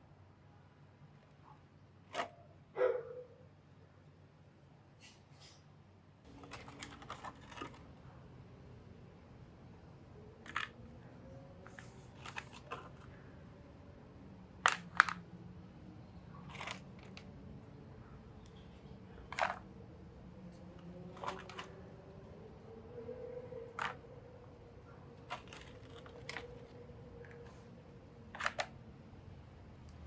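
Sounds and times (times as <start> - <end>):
plastic toy clicks and taps: 14.7 - 15.2.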